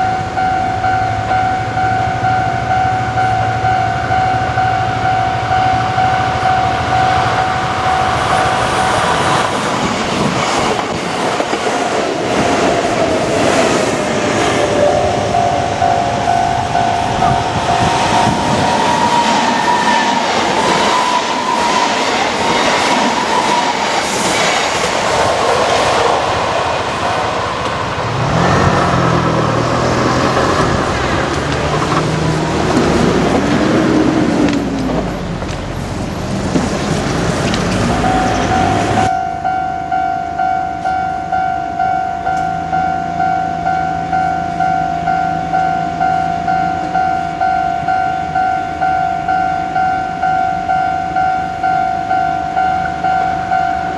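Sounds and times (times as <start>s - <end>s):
level crossing warning bell: 0.0s - 9.1s, 13.0s - 24.0s, 28.2s - 53.9s
train wheels clattering over rail joints: 27.3s - 39.1s.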